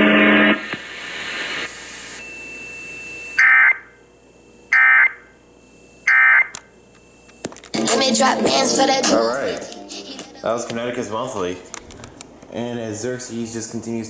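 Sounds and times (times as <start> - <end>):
radio hiss: 0.0 - 2.4
screechy two-tone digital data bursts: 3.4 - 3.9, 4.7 - 5.3, 6.0 - 6.5.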